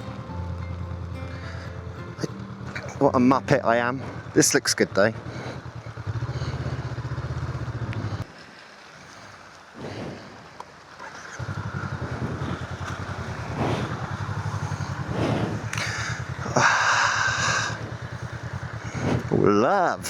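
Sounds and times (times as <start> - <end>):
motorcycle engine running: 0.0 - 8.3, 9.8 - 20.0
burst of rushing noise: 11.4 - 19.4.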